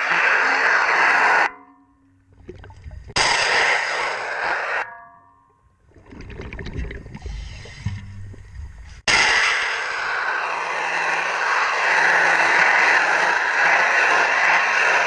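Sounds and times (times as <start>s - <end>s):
bubbles rushing from regulator: 2.3s - 3.2s, 5.8s - 9.0s
soft low rush: 6.2s - 11.8s.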